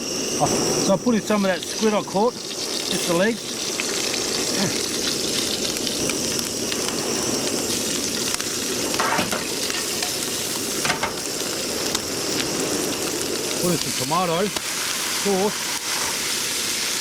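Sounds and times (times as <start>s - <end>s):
squid sizzling in hot oil: 0.0s - 17.0s.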